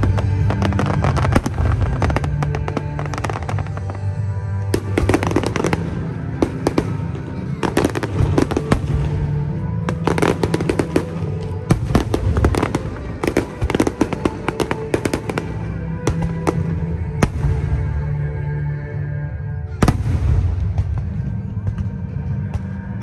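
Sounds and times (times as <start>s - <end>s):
fireworks bangs and crackles: 0.0s - 18.2s, 19.8s - 23.0s
music playing: 0.0s - 23.0s.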